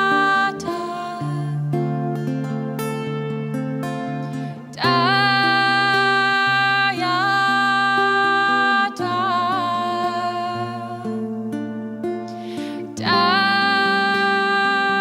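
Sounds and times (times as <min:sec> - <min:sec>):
woman singing long notes: 0:00.0 - 0:01.6, 0:04.8 - 0:11.2, 0:12.8 - 0:15.0.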